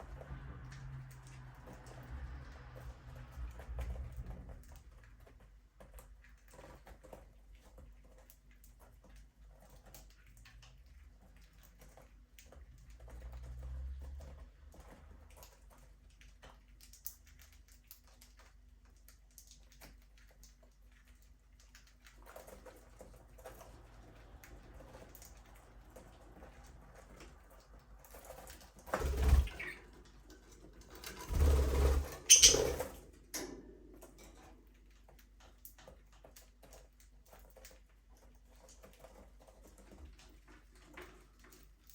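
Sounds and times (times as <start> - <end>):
birds scratching and pecking: 0.0 - 41.9
birds rustling: 22.0 - 33.1.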